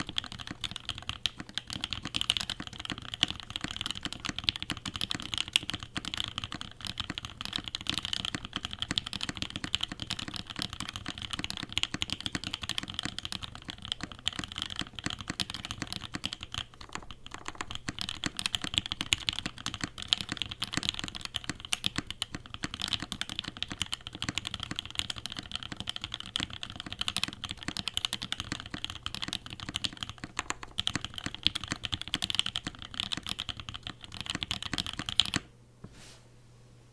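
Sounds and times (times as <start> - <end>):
mechanical keyboard typing: 0.0 - 35.5.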